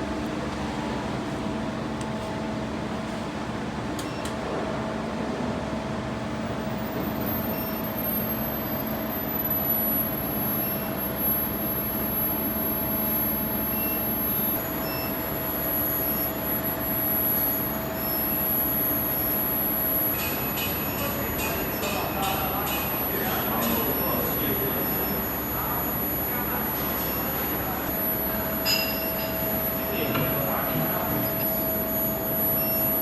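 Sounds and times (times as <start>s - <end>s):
machine hum with low tones: 23.0s - 33.0s
high-pitched whine: 24.8s - 33.0s.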